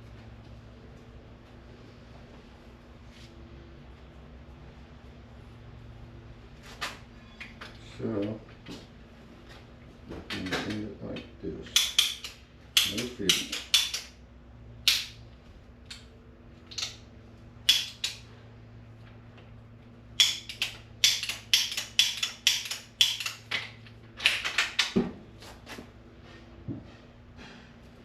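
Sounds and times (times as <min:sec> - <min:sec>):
faint steady hum: 0:00.0 - 0:28.0
sharp clicks and knocks: 0:20.2 - 0:25.2.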